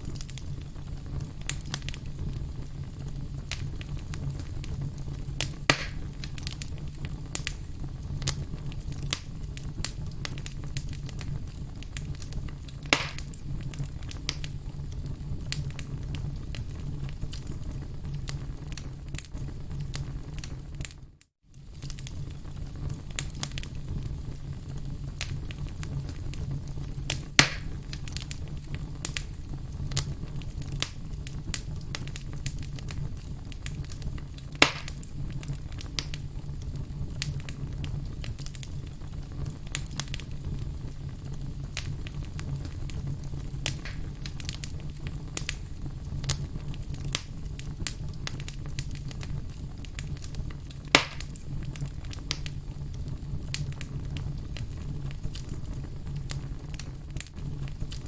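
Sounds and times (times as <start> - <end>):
firewood crackling: 0.0 - 58.0
loud sharp pops: 5.4 - 6.1, 12.8 - 13.4, 27.4 - 27.8, 34.6 - 35.1, 43.6 - 44.4, 50.9 - 51.4.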